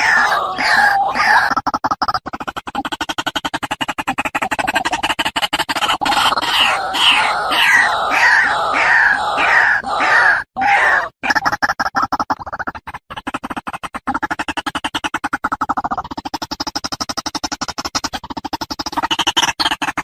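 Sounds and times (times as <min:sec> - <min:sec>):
waterhen harsh croaking calls: 0:00.0 - 0:01.6, 0:05.6 - 0:12.0.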